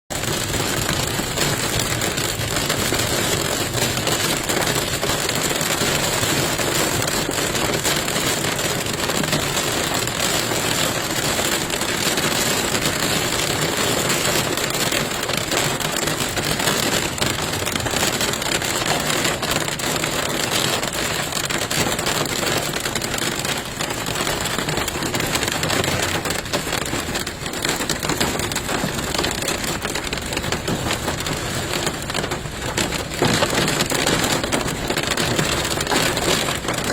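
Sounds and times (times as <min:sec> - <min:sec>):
hail pelting car roof: 0:00.1 - 0:36.9.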